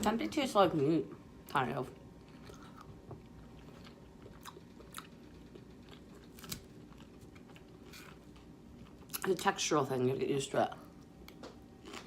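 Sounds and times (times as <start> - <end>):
person chewing food: 2.0 - 9.2, 10.9 - 12.0.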